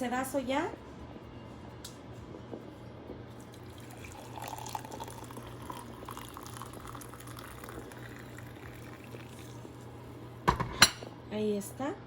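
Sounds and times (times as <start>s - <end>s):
tea pouring and splashing: 3.4s - 10.2s.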